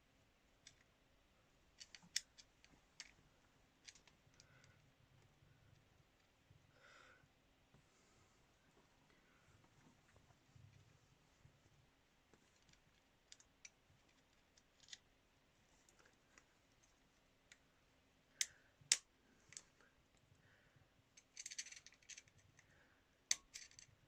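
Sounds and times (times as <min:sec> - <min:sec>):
small metallic clicks and taps: 0:00.6 - 0:00.9, 0:03.8 - 0:04.8, 0:23.3 - 0:23.9.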